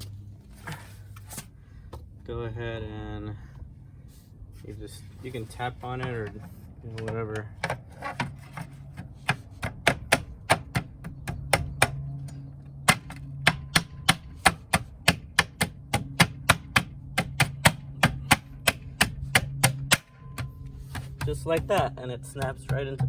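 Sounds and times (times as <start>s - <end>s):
wheel cover being tapped on: 5.9s - 23.0s.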